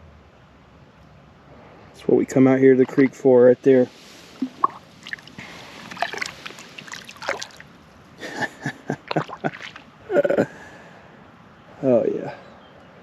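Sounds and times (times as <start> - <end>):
creek water splashing and trickling: 2.0 - 10.3.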